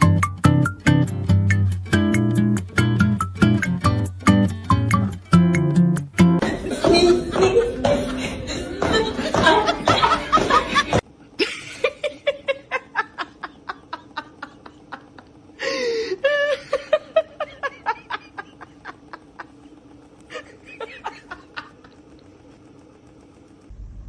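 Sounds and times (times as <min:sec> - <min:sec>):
person laughing: 0:06.4 - 0:19.7, 0:20.3 - 0:22.0.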